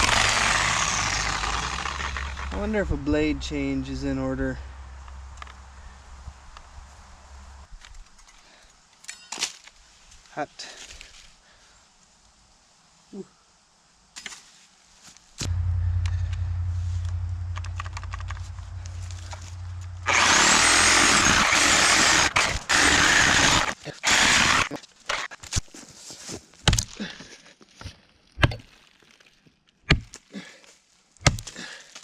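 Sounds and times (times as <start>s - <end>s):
power saw cutting wood: 0.0s - 2.6s, 18.1s - 25.4s
low motor hum: 0.0s - 3.2s, 15.5s - 24.7s.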